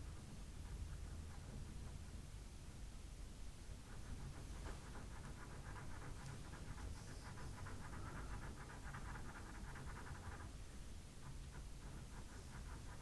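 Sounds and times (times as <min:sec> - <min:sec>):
pencil scratching on paper: 0:00.5 - 0:02.2, 0:03.8 - 0:10.6, 0:11.2 - 0:13.0.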